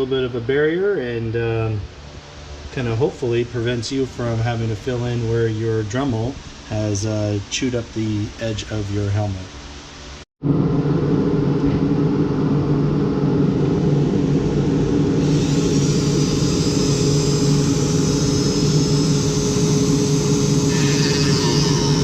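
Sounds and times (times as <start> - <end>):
grinding hiss: 15.1 - 22.0
rotary tool motor whine: 15.2 - 22.0.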